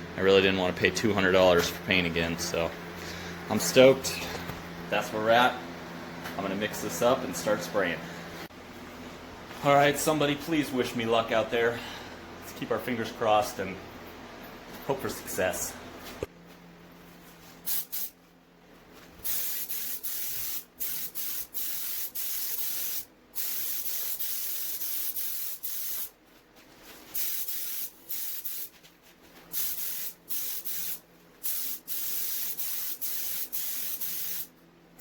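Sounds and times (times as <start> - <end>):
paint spray gun hissing: 17.7 - 18.1, 19.2 - 26.1, 27.1 - 28.7, 29.5 - 34.5.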